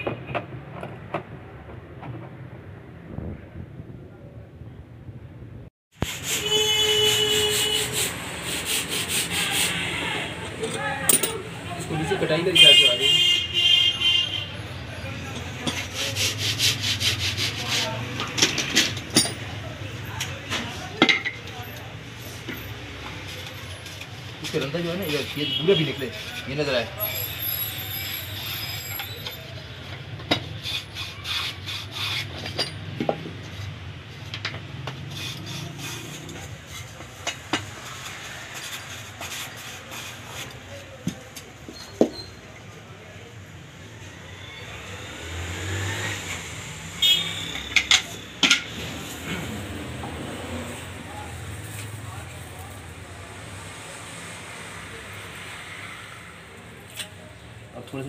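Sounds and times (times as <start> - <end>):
sanding strokes on wood: 6.0 - 10.4, 15.7 - 18.1, 30.4 - 32.5, 34.8 - 40.9
rubbing and scraping on wood: 6.0 - 12.9, 15.2 - 19.5, 20.5 - 42.4.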